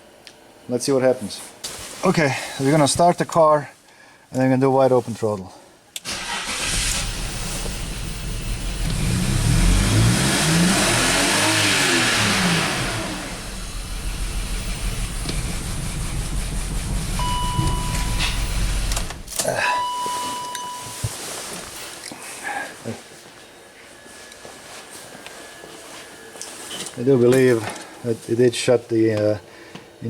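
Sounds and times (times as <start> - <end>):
misfiring car engine revving: 6.1 - 19.3
short electronic beeps: 17.2 - 18.6, 19.7 - 21.2.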